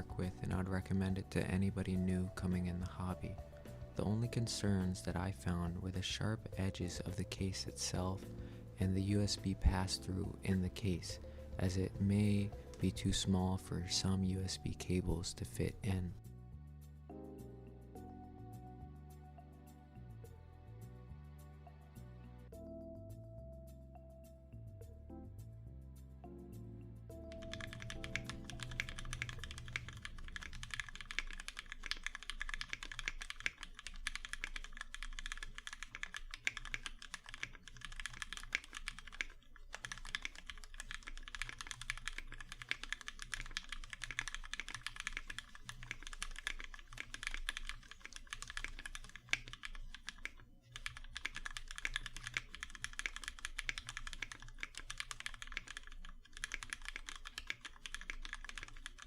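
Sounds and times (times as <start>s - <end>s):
fast typing on mechanical keyboard: 0.0s - 5.8s, 8.9s - 13.5s, 27.3s - 59.0s
background music: 0.0s - 58.6s.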